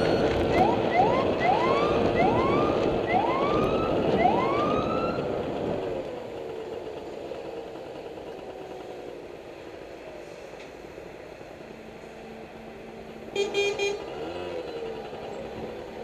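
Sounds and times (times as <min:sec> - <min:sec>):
siren whooping: 0:00.0 - 0:05.4
heavy vehicle engines rumbling: 0:00.0 - 0:16.0.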